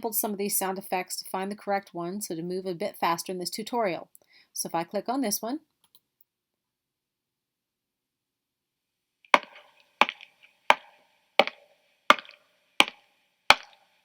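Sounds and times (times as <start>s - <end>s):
footsteps: 9.4s - 13.8s.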